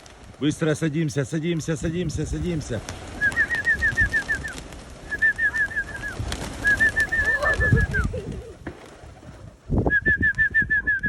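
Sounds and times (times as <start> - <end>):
pigeons flapping wings: 0.0 - 0.8, 2.1 - 10.9
pigeons cooing: 3.0 - 9.6
quick whistled notes: 3.2 - 8.1, 9.8 - 11.0.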